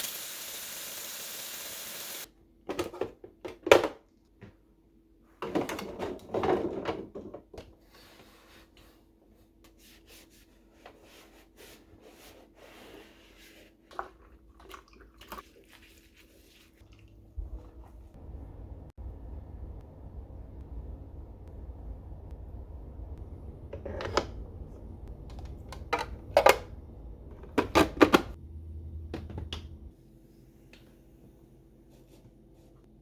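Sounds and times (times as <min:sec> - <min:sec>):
water running from a tap: 0:00.0 - 0:02.3
objects knocking and clattering: 0:05.4 - 0:07.6
faint steady hum: 0:16.9 - 0:33.0.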